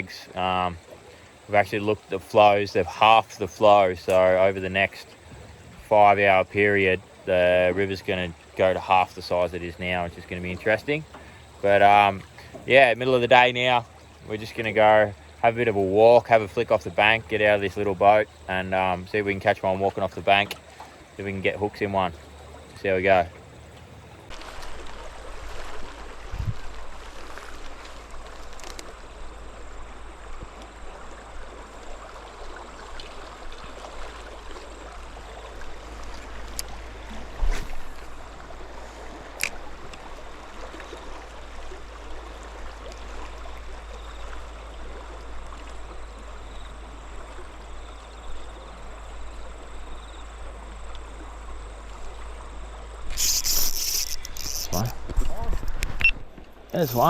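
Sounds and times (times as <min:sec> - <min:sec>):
river water flowing: 0:00.0 - 0:57.0
faint clicks: 0:53.0 - 0:57.0.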